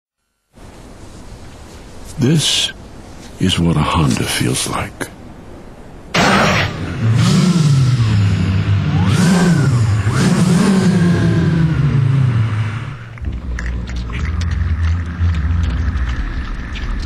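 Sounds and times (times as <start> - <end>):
car engine revving: 6.2 - 16.9.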